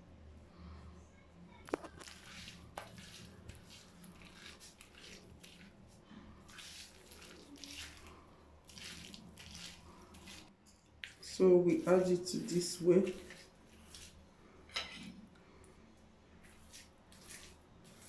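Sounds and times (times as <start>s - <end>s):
wet squishing of hair paste: 1.8s - 14.3s, 16.4s - 18.0s.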